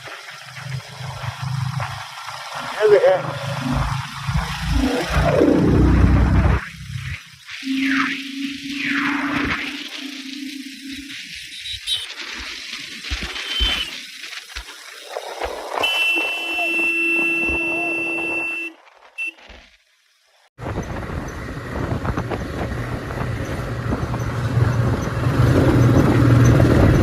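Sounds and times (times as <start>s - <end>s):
motorcycle engine running: 0.0s - 7.2s, 20.6s - 27.0s
wind and road noise: 0.0s - 27.0s
steady horn-like tone: 15.8s - 19.4s.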